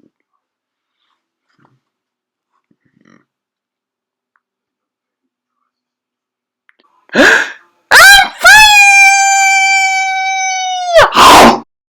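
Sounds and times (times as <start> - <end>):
person sneezing: 11.0 - 11.7.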